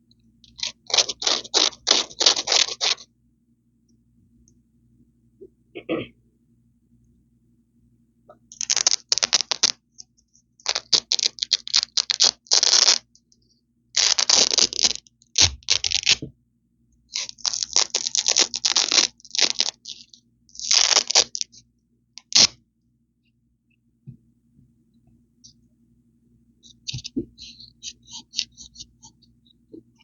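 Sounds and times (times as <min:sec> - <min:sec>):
velcro ripping: 0:00.6 - 0:03.0, 0:08.6 - 0:09.8, 0:10.6 - 0:13.0, 0:14.0 - 0:16.2, 0:17.1 - 0:20.0, 0:20.6 - 0:21.5, 0:22.2 - 0:22.6.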